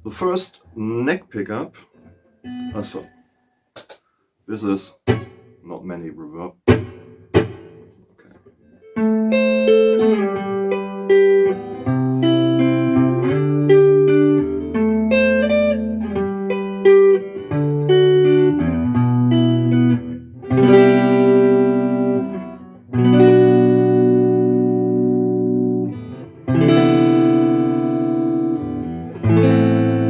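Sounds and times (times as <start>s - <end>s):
electric guitar playing: 2.0s - 3.3s, 6.7s - 8.0s, 8.7s - 30.0s.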